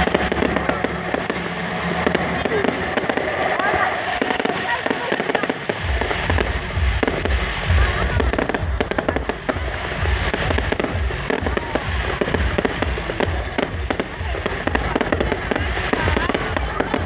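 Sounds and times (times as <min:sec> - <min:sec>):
firecrackers popping: 0:00.0 - 0:17.0
music with heavy bass beat: 0:00.0 - 0:17.0
voices: 0:00.0 - 0:17.0.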